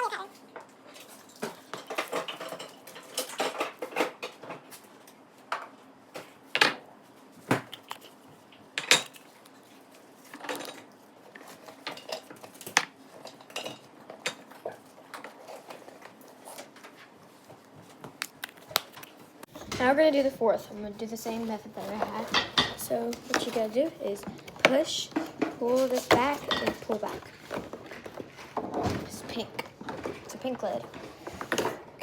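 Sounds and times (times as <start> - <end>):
slime clicking and squelching: 18.2 - 19.2.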